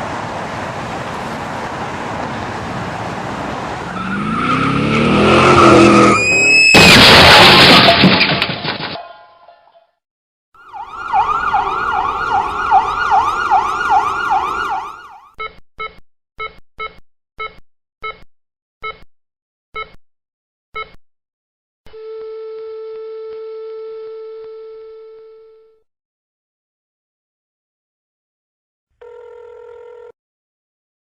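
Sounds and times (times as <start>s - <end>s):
emergency siren wailing: 3.8s - 6.7s, 10.6s - 15.3s
car crash: 4.2s - 9.2s
short electronic beeps: 15.4s - 19.1s, 19.8s - 20.0s, 20.8s - 21.0s.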